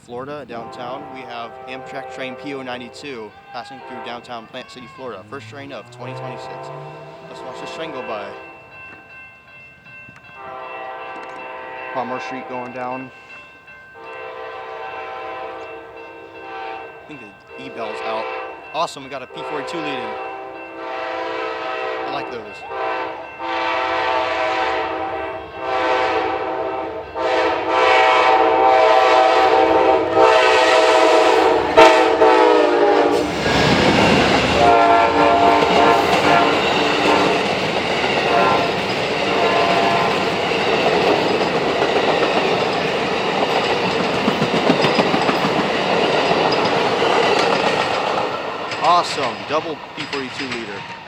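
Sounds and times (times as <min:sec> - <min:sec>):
locomotive rumbling past: 0:00.0 - 0:51.0
train cars rolling on rails: 0:00.0 - 0:51.0
locomotive horn blasts: 0:00.4 - 0:08.6, 0:10.4 - 0:13.0, 0:14.0 - 0:18.7, 0:19.3 - 0:41.1.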